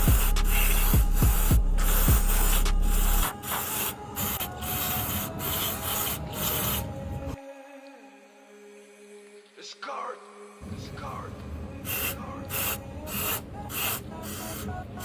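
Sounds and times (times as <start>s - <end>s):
aerosol spray hissing: 0.0s - 6.9s, 11.8s - 15.0s.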